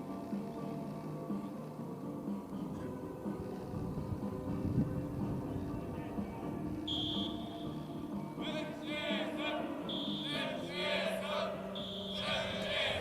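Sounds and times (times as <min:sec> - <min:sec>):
music with singing: 0:00.0 - 0:13.0
short high beeps: 0:06.9 - 0:07.8.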